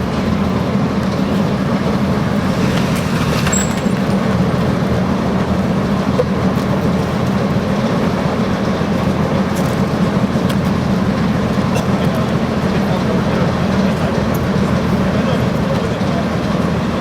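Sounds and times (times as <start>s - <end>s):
tank engine running: 0.0s - 17.0s.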